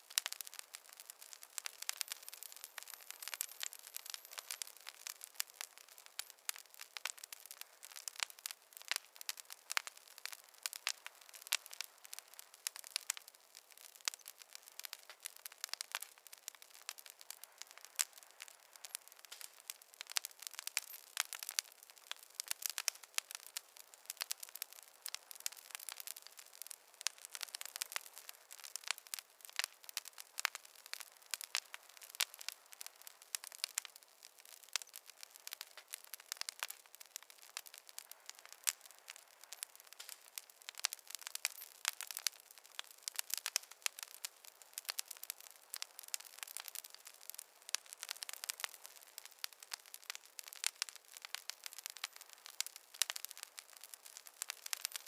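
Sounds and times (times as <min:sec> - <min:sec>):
wood fire crackling: 0:00.0 - 0:55.0.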